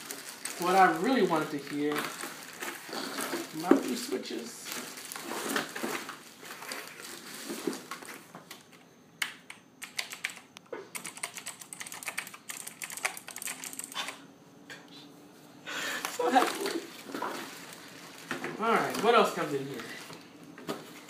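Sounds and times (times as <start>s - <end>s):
mechanical keyboard clicking: 9.2s - 14.2s.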